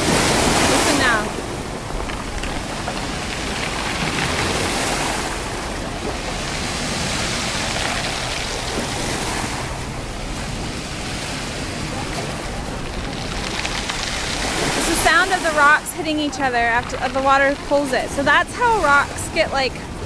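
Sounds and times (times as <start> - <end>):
waves washing over pebbles: 0.0 - 20.0
pebbles rattling: 1.8 - 5.2, 12.3 - 18.0.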